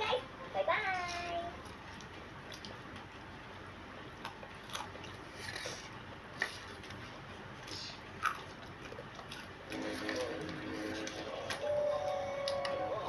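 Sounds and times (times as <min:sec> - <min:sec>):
person chewing food: 0:01.6 - 0:03.2, 0:04.0 - 0:11.6.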